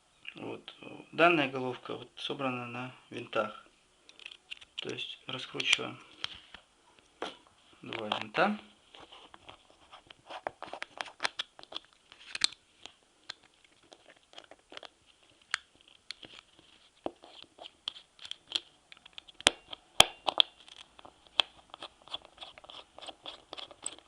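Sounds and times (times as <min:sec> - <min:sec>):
screwdriver clicks and scrapes: 0:17.8 - 0:24.0.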